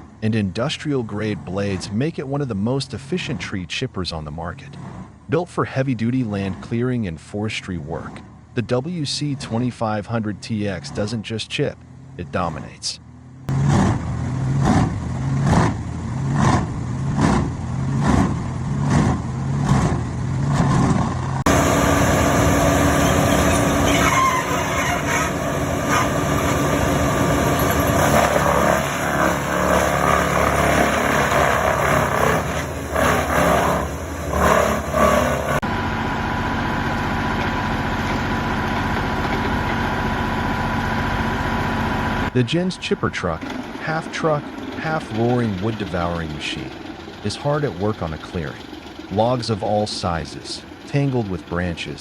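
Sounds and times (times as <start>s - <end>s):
wood chipper running: 21.2s - 51.8s
knocks in wood chipper: 21.5s - 35.5s.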